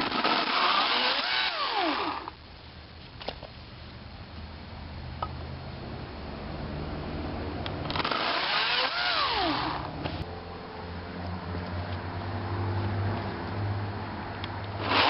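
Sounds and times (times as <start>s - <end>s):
battery chainsaw whine: 0.0s - 2.4s, 7.8s - 10.3s.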